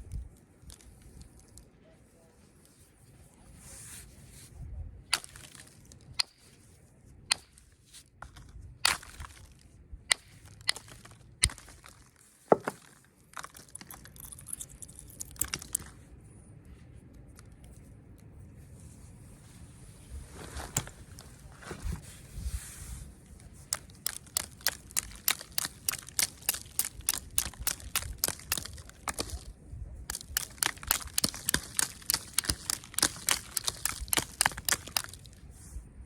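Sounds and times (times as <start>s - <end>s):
knapping tool clicking on stone: 7.3s - 7.6s, 10.1s - 12.8s, 23.6s - 35.4s
crunchy scraping on stone: 7.3s - 16.0s, 20.0s - 35.5s.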